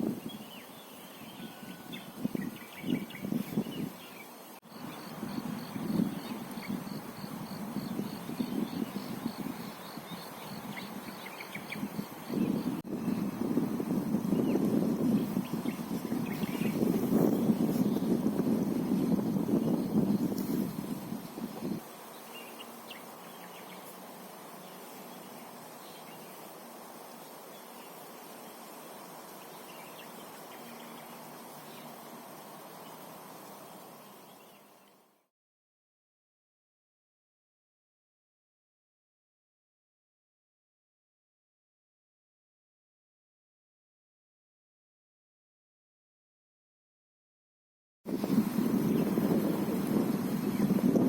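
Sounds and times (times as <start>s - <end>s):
steady hiss: 0.0s - 35.2s, 48.1s - 51.0s
bird chirps: 0.2s - 13.2s
insects chirping: 1.0s - 35.0s
wind buffeting microphone: 1.9s - 4.0s, 4.8s - 21.9s, 48.1s - 51.0s
insect chirping in pulses: 4.7s - 13.1s.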